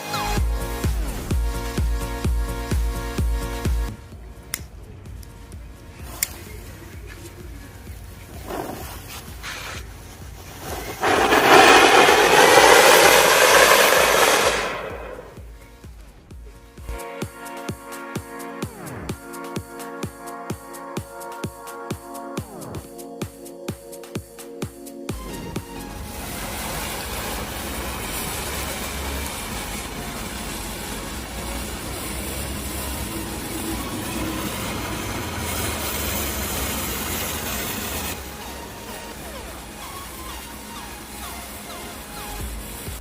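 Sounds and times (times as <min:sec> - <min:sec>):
firework hissing: 0:08.3 - 0:15.4, 0:25.1 - 0:43.0
low rumble: 0:10.6 - 0:15.5.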